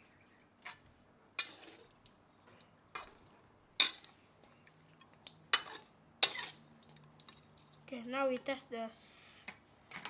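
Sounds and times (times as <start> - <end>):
utensil scraping a pot: 5.6 - 6.6.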